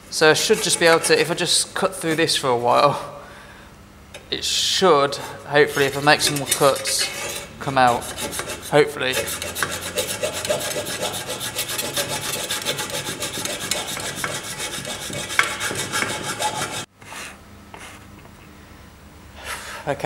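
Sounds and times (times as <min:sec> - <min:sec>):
saw rasping through metal: 0:00.2 - 0:02.4, 0:05.6 - 0:16.9.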